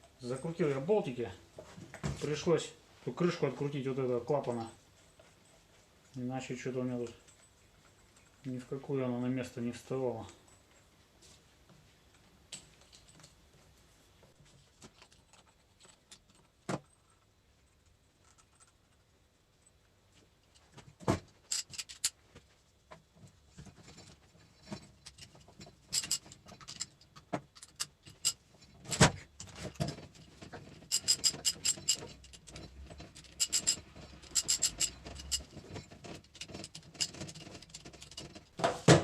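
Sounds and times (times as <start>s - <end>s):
metal tools clinking: 21.4s - 22.2s, 23.6s - 38.6s.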